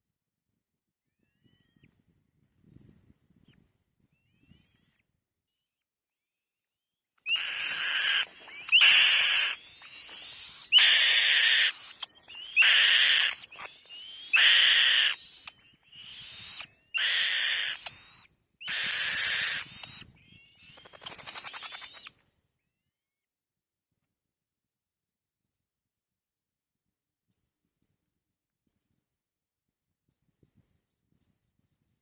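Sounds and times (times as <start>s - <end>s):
bird screeching raspily: 7.3s - 20.0s, 20.7s - 22.1s
soft rapidly pulsing call: 7.3s - 22.1s.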